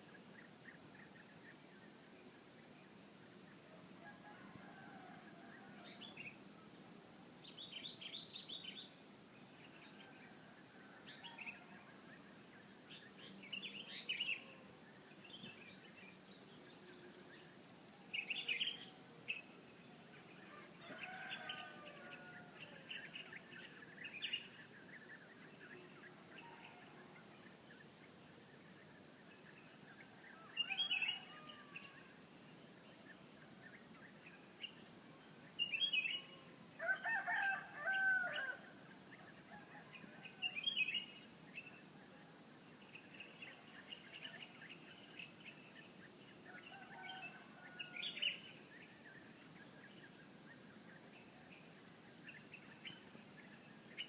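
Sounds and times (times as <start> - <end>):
steady high-pitched hiss: 0.0 - 54.0
distant rooster crowing: 4.0 - 5.9, 20.5 - 22.8, 36.8 - 38.6.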